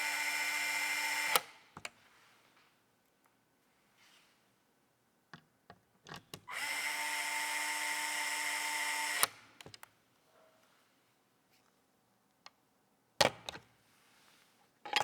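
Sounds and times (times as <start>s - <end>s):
electric screwdriver running: 0.0s - 1.5s, 6.5s - 9.4s.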